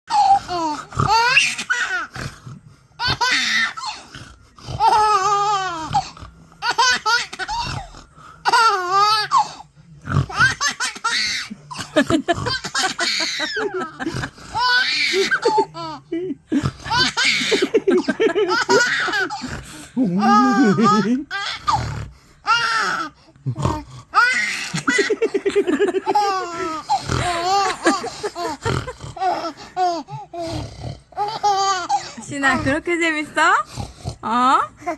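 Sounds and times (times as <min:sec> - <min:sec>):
baby laughing: 0:16.8 - 0:19.5, 0:20.2 - 0:21.7, 0:24.2 - 0:30.2, 0:31.2 - 0:32.2.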